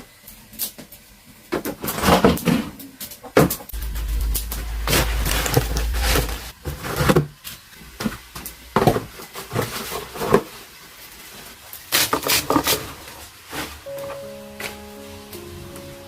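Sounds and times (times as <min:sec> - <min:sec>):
low rumble: 0:03.7 - 0:07.0.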